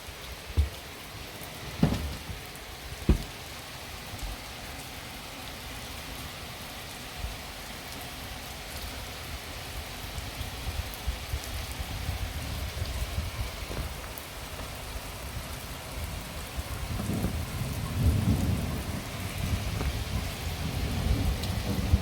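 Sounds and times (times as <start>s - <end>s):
steady rain falling: 0.0s - 22.0s
low thunder rumble: 16.6s - 22.0s.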